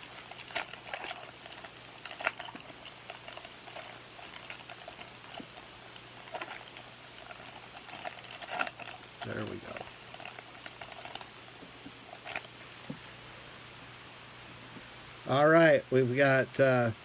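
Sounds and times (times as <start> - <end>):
foil pack tearing and crinkling: 0.0 - 13.2.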